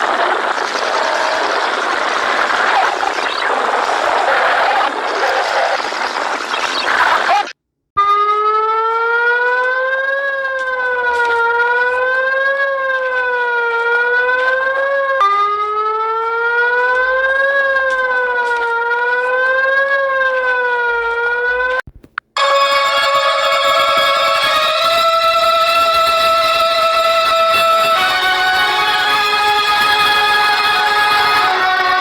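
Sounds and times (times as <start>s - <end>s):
emergency alert siren tone: 8.0s - 21.8s, 22.4s - 32.0s
plucked string music: 21.9s - 32.0s.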